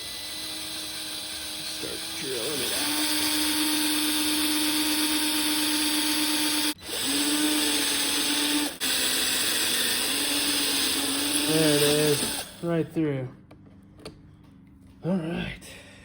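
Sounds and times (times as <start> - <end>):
power drill motor whining: 0.0 - 12.8.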